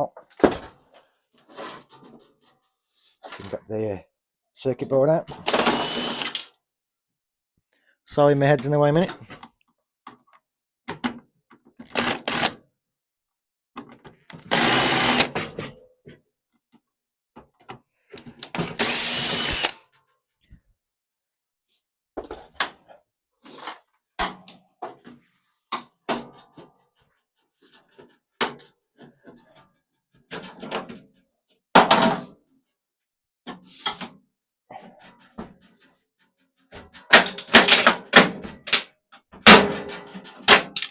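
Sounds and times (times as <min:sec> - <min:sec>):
power drill running: 0:05.4 - 0:06.4, 0:11.9 - 0:12.5, 0:14.4 - 0:15.3, 0:18.6 - 0:19.8
clicks and knocks from handled parts: 0:35.0 - 0:40.9.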